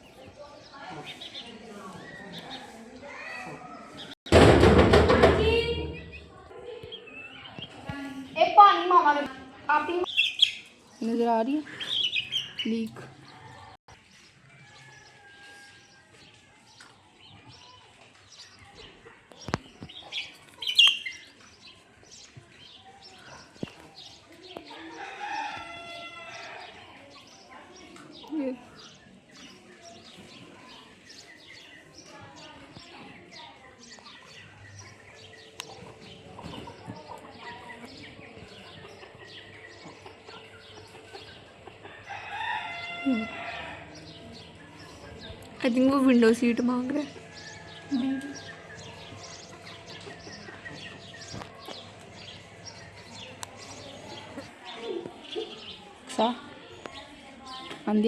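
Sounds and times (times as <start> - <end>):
small birds chirping: 0.0 - 4.2, 5.8 - 58.0.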